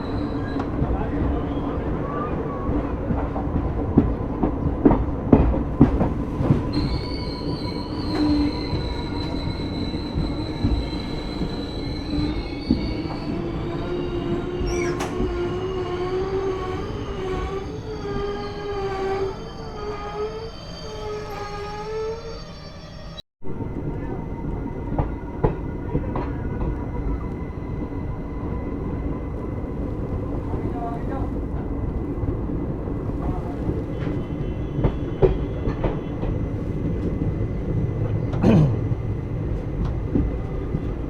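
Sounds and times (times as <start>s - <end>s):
train wheels squealing: 0.0s - 2.9s, 6.0s - 23.2s, 33.0s - 38.3s.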